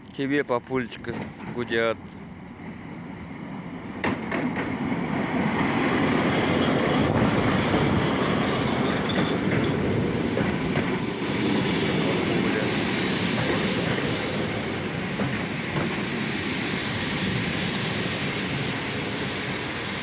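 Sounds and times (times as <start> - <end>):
train wheels rumbling: 0.3 - 20.0
high wheel squeal: 6.5 - 20.0.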